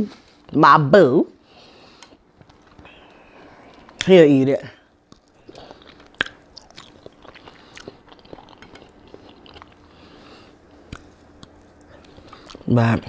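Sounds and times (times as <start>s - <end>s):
person chewing food: 1.7s - 4.1s, 4.8s - 12.7s.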